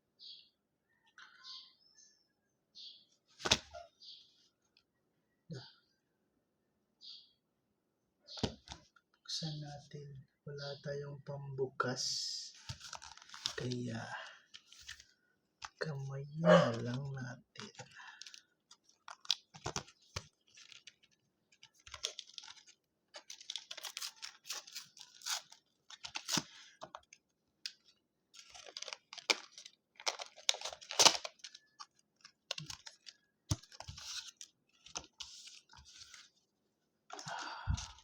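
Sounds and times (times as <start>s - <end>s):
packaging being torn open: 21.6s - 36.2s.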